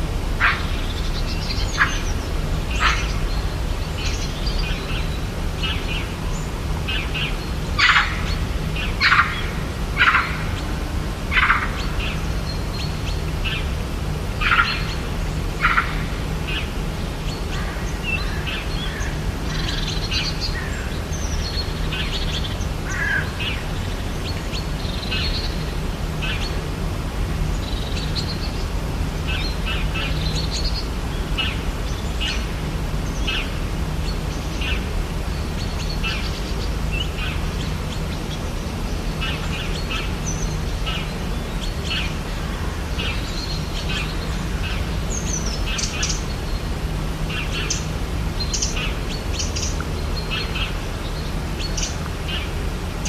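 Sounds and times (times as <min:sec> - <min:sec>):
low background hum: 0:00.0 - 0:53.0
loud sharp bird calls: 0:00.3 - 0:26.8
birds chirping and calling: 0:00.3 - 0:53.0.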